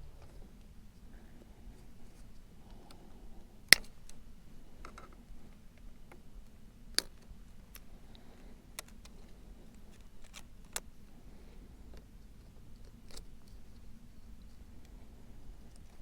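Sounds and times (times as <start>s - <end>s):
faint steady hum: 0.0s - 16.0s
small parts and tools clicking: 6.9s - 10.9s.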